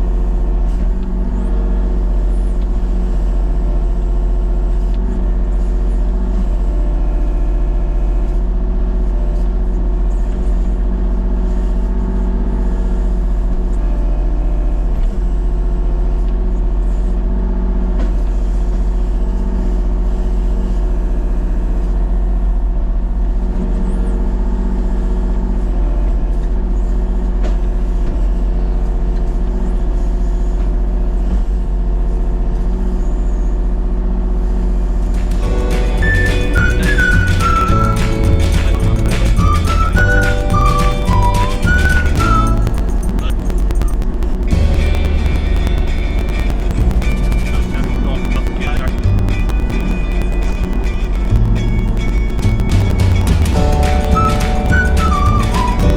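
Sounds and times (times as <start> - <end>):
machine engine humming: 34.7 - 55.9.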